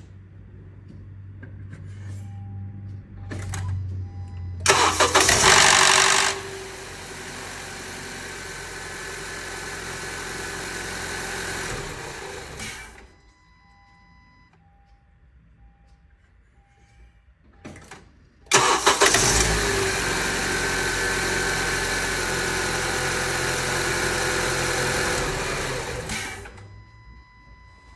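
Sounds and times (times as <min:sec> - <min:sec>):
engine running noise: 0:00.0 - 0:13.1, 0:18.5 - 0:26.9
car engine cranking and catching: 0:04.6 - 0:13.1, 0:17.8 - 0:26.8.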